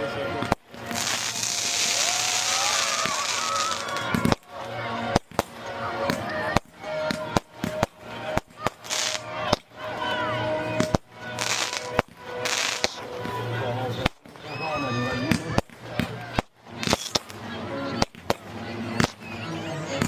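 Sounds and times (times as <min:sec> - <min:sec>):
fireworks crackling hiss: 0:00.4 - 0:05.7, 0:06.6 - 0:09.8, 0:10.8 - 0:13.2, 0:16.4 - 0:17.4
fireworks bangs: 0:00.4 - 0:09.8, 0:10.7 - 0:14.6, 0:15.2 - 0:17.4, 0:18.0 - 0:19.4.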